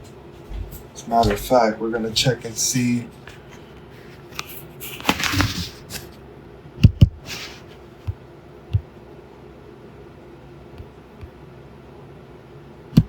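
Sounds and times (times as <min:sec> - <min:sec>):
sharp knocks: 0:00.5 - 0:01.7.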